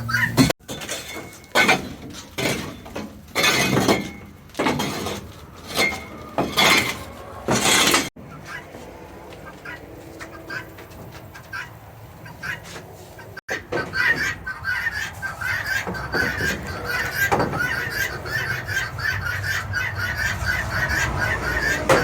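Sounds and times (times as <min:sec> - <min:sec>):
chickens clucking: 0:00.0 - 0:00.6, 0:01.3 - 0:22.0
scraping droppings off coop floor: 0:00.1 - 0:22.0.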